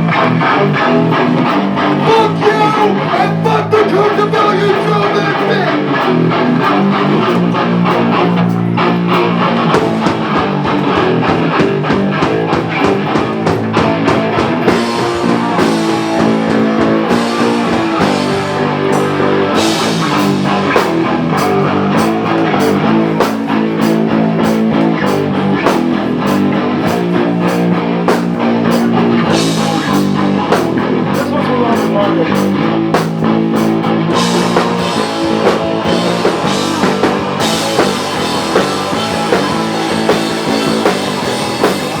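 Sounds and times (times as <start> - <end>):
bass guitar: 0.0 - 42.0
drum kit beat: 0.0 - 42.0
electric guitars: 0.0 - 42.0.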